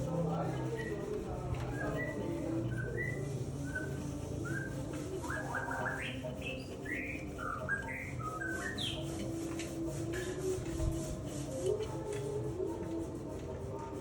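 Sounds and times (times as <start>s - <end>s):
bird singing whistled notes: 1.7s - 9.0s.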